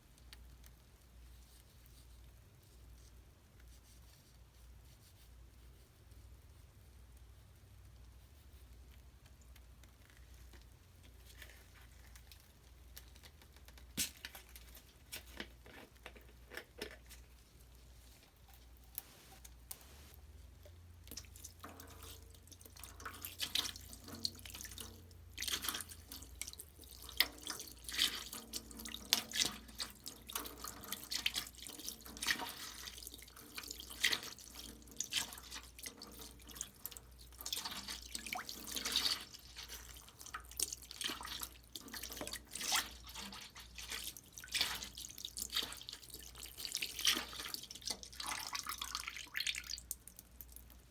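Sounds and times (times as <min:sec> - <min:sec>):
fine crackling: 0:18.9 - 0:20.2
water dripping in a basin: 0:20.6 - 0:50.9.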